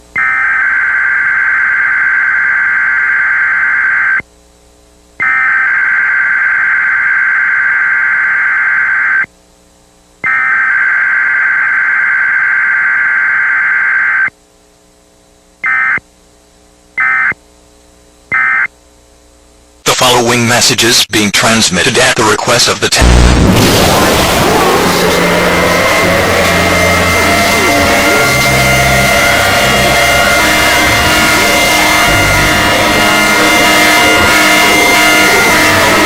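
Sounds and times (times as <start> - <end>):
high-pitched alarm tones: 0.1 - 4.2, 5.2 - 9.3, 10.2 - 14.3, 15.6 - 16.0, 24.1 - 36.0
short beeps: 15.6 - 16.0, 17.0 - 17.4, 18.3 - 18.7.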